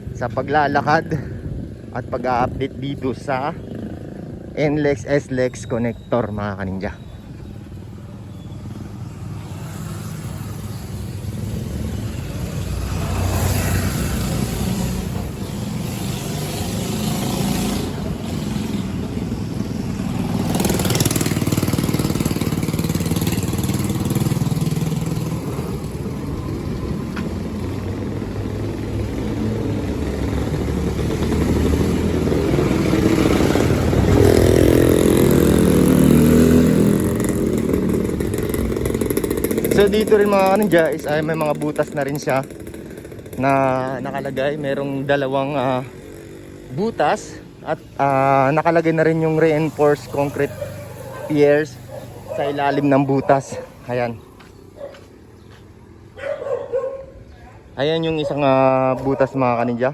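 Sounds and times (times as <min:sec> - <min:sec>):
vehicle engines passing: 0:00.0 - 0:59.9.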